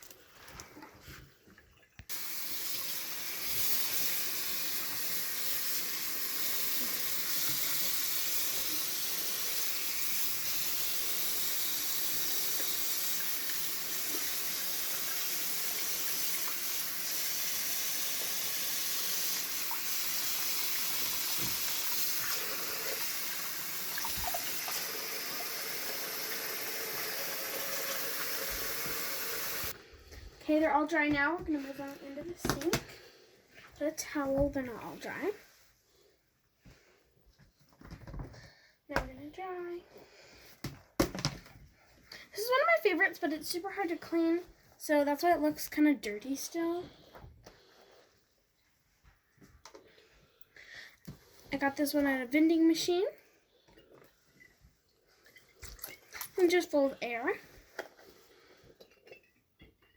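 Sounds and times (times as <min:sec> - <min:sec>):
water running from a tap: 0:02.1 - 0:29.8, 0:55.3 - 0:57.4.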